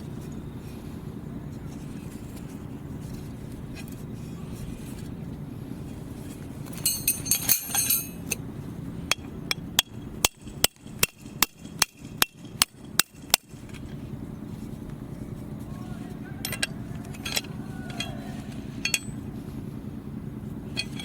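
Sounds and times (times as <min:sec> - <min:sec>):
ringing metallic clinks: 0:06.7 - 0:08.4, 0:16.4 - 0:18.2, 0:18.8 - 0:19.2.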